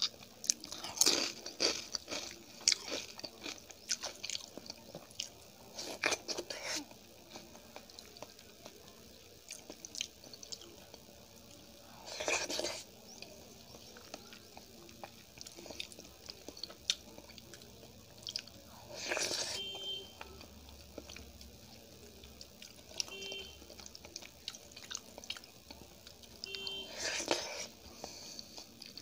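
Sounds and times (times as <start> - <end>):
person chewing wetly: 0.0 - 8.8, 9.4 - 11.0, 12.0 - 29.0.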